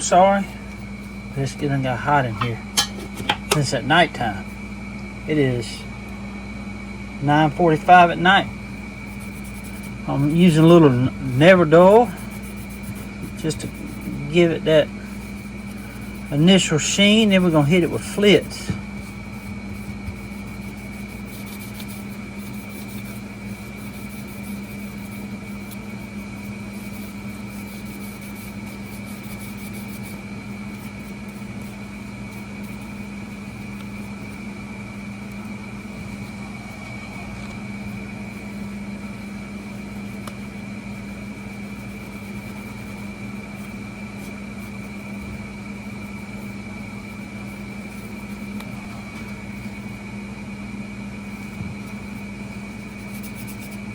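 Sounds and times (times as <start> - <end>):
air conditioner humming: 0.0 - 53.9
high steady whine: 0.0 - 53.9.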